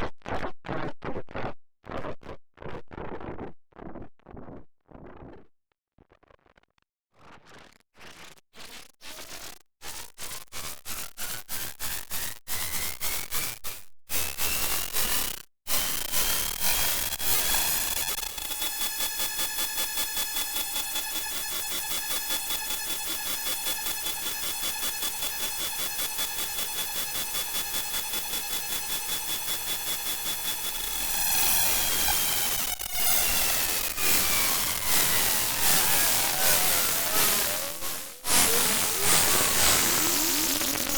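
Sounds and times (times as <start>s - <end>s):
harsh electronic pulsing buzz: 12.5s - 40.9s
thin synthesized tone: 17.4s - 40.9s.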